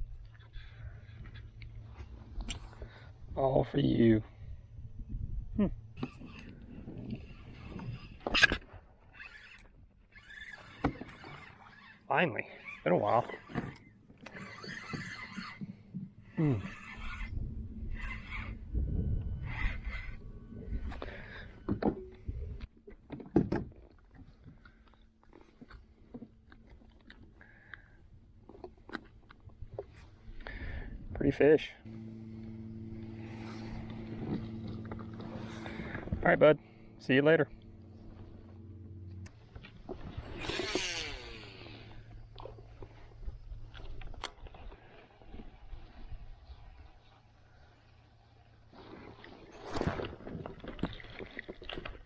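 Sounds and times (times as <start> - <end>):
reel and tackle clicks: 6.0 - 18.6, 31.9 - 46.1
fishing reel whirring: 6.0 - 22.6, 31.9 - 50.3.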